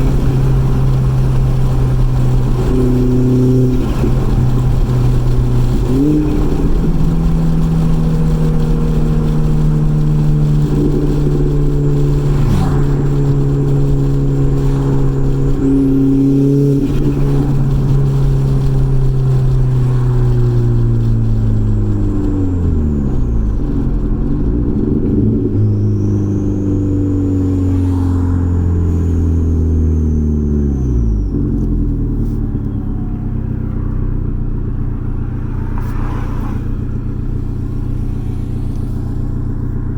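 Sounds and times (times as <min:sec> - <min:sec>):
car engine revving: 0:00.0 - 0:39.9
faint high turbo whistle: 0:32.2 - 0:39.9.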